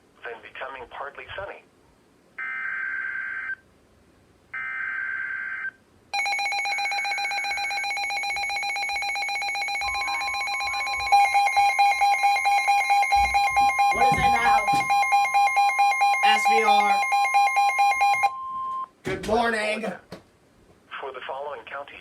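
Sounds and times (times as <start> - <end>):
pulsing electronic alert tone: 6.2 - 18.3
telephone ring bursts: 6.2 - 18.4
steady electronic tone: 7.5 - 18.3.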